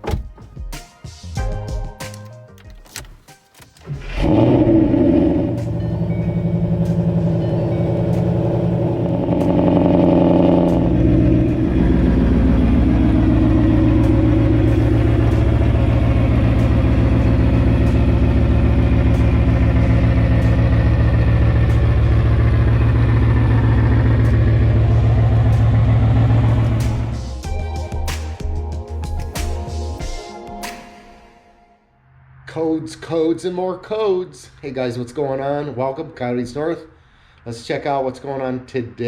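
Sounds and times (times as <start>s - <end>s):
car engine running: 3.8s - 27.7s.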